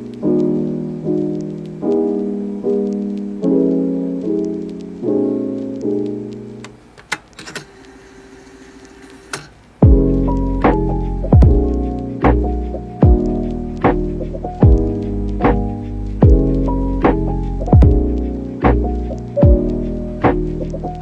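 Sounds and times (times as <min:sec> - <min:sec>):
slow solo piano music: 0:09.8 - 0:21.0.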